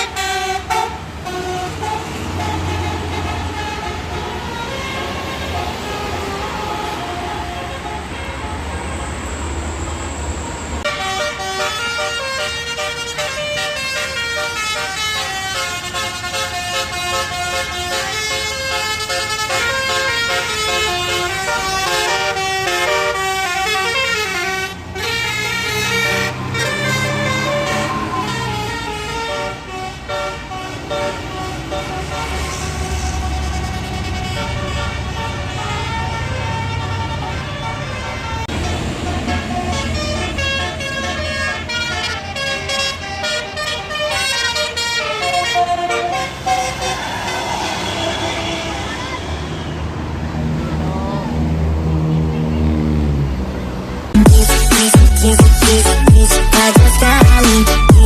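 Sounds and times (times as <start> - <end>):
bus horn playing a fast tune: 0.0 - 9.0, 10.8 - 49.7, 54.2 - 58.0
bus passing by: 0.0 - 54.2
bus engine running: 0.0 - 58.0.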